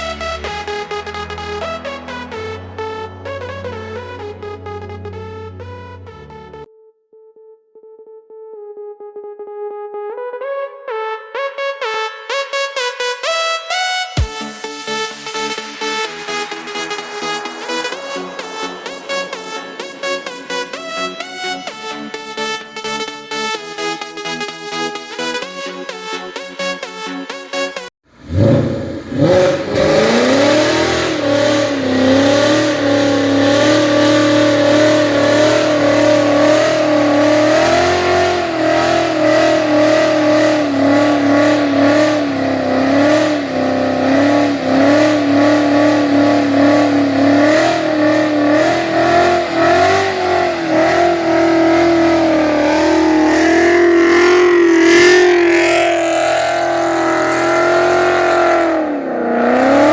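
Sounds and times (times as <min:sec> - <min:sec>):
car engine starting and idling: 0:00.0 - 0:06.7, 0:15.1 - 0:21.8, 0:28.1 - 0:59.9.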